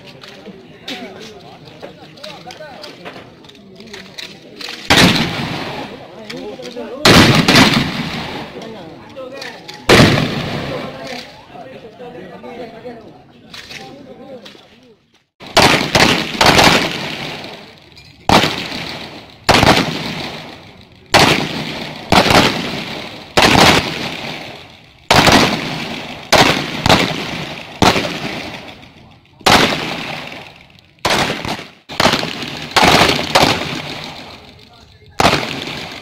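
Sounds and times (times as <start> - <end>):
gunshots with echo: 4.9 - 6.0, 7.0 - 8.6, 9.9 - 11.0, 15.4 - 17.7, 18.3 - 34.5, 35.2 - 36.0.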